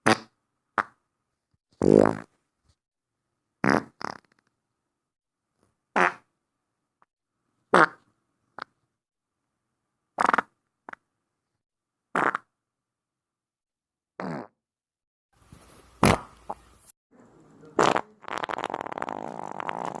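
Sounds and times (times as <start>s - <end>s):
farts: 0.0s - 1.0s, 1.8s - 2.3s, 3.6s - 4.5s, 6.0s - 6.3s, 7.7s - 8.8s, 10.2s - 11.0s, 12.1s - 12.5s, 14.2s - 14.6s, 16.0s - 16.6s, 17.8s - 20.0s.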